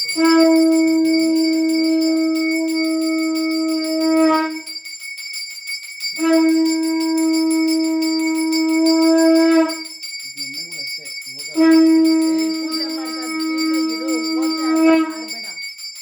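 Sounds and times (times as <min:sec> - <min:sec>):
conch shell blown: 0:00.0 - 0:04.8, 0:06.2 - 0:10.0, 0:11.5 - 0:15.6
brass hand bell ringing: 0:00.0 - 0:16.0.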